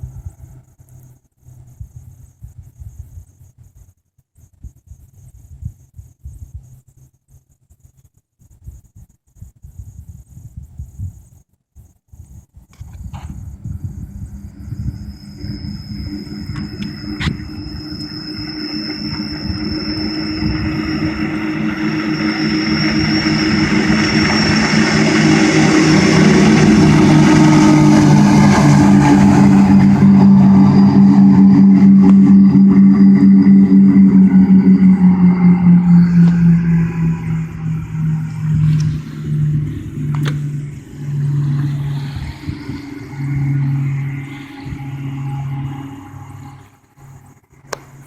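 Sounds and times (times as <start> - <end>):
outboard motors droning: 13.2 - 48.0.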